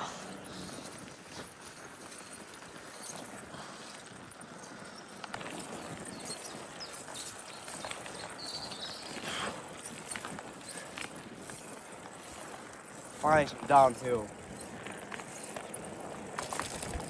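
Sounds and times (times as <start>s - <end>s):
bicycle tyres crunching: 0.0s - 17.0s
bike rattling: 0.0s - 17.0s
wind noise on microphone: 14.3s - 17.0s.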